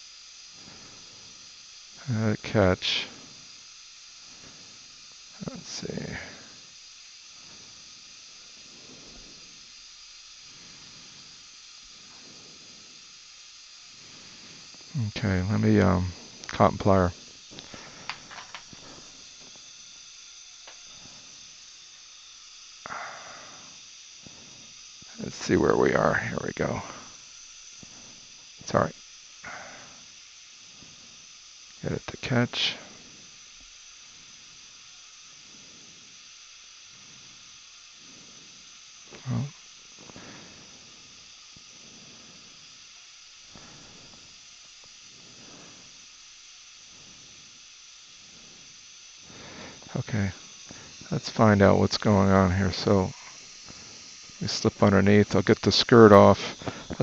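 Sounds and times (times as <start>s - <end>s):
dental equipment hiss: 0.0s - 57.0s
faint high steady tones: 0.0s - 57.0s
puff of air: 7.3s - 9.8s, 10.4s - 13.2s, 43.5s - 44.4s, 45.0s - 46.0s, 48.2s - 51.1s, 56.4s - 57.0s.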